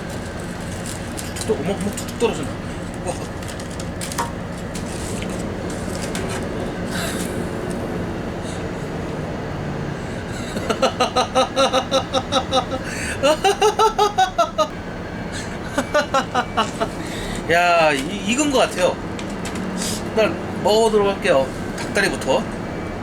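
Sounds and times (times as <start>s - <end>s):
steady background noise: 0.0s - 23.0s
high-pitched laughter: 10.4s - 14.7s, 15.6s - 17.0s.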